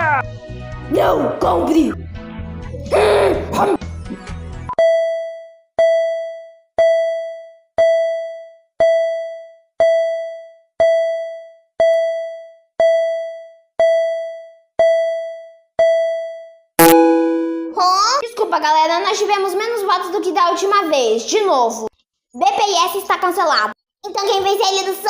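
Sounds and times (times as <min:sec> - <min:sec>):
single-pitched electronic chime: 0:16.8 - 0:18.0.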